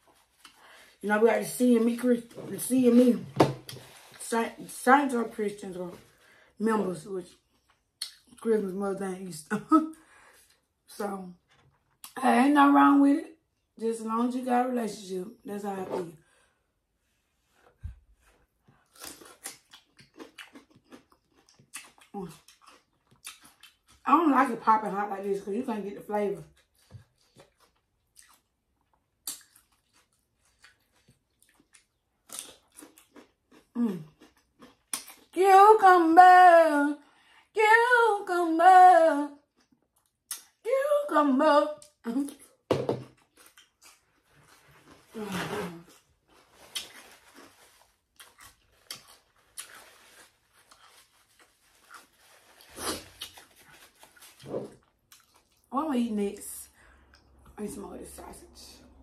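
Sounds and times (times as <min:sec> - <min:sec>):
person chewing and biting: 0:18.8 - 0:24.0, 0:26.6 - 0:35.3, 0:46.6 - 0:55.6.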